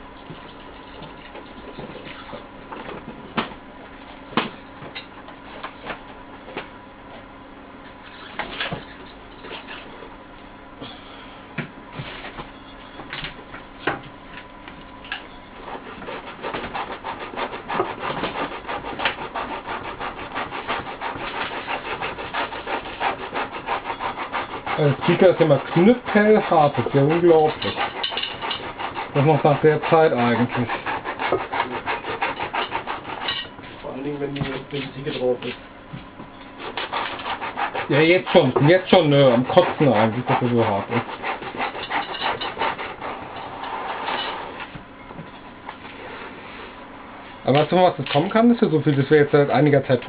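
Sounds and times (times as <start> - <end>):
fast scraping and rubbing: 15.6 - 35.6, 36.6 - 44.7.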